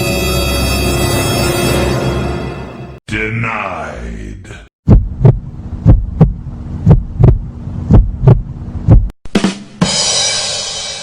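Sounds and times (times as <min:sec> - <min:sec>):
bass drum and cymbal crash: 0:07.9 - 0:11.0.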